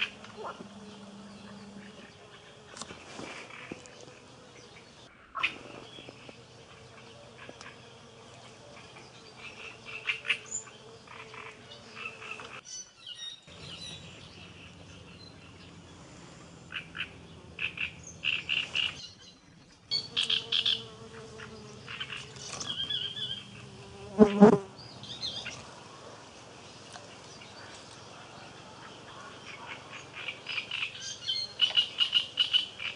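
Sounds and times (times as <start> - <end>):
insects humming: 0.0 - 12.6, 13.2 - 32.9
frogs calling: 16.6 - 19.0.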